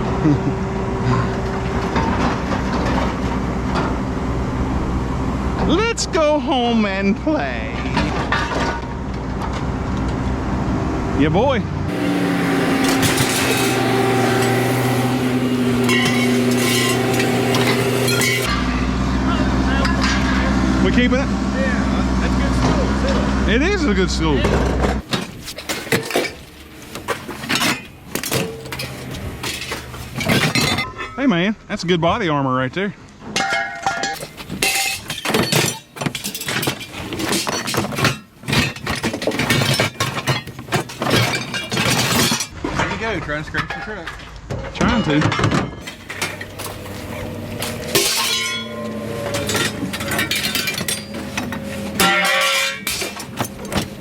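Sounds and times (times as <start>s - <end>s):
engine running steadily: 0.0s - 25.7s, 45.8s - 54.0s
scrap metal clanking: 7.4s - 9.7s, 11.9s - 18.8s, 19.8s - 20.5s, 24.4s - 31.2s, 33.3s - 54.0s
metallic clinks and clatters: 45.8s - 54.0s.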